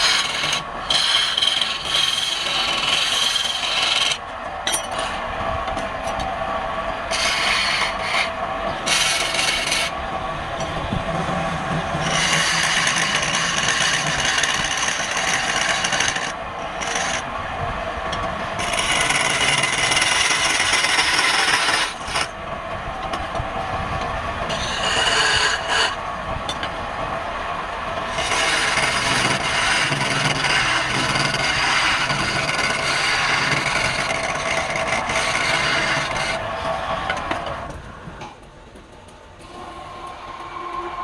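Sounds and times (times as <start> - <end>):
wood rasping on a lathe: 0.0 - 4.2, 7.1 - 10.0, 11.2 - 17.3, 18.6 - 22.3, 24.5 - 26.0, 28.1 - 36.4
lathe low hum: 0.0 - 41.0.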